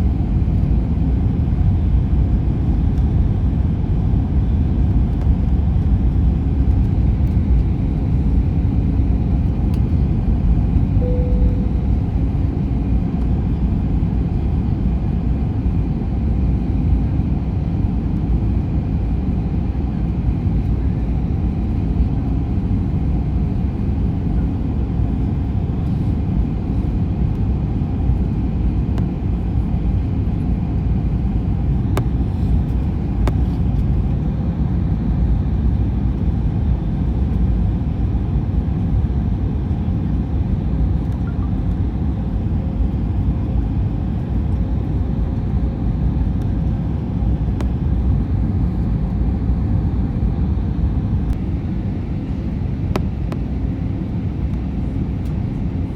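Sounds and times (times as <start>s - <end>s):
airliner cabin engine rumble: 0.0s - 55.9s.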